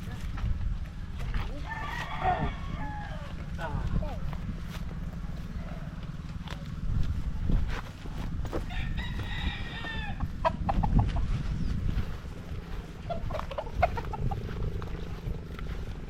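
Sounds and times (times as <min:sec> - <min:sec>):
rooster crowing: 0:01.5 - 0:03.8, 0:08.5 - 0:10.4
chicken calls: 0:01.5 - 0:04.3, 0:08.5 - 0:16.0.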